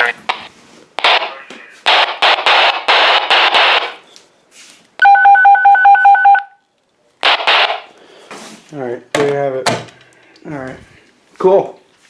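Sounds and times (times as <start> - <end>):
dual-tone radio beeps: 0.0 - 0.5
noisy radio audio: 0.0 - 4.2, 7.2 - 8.0.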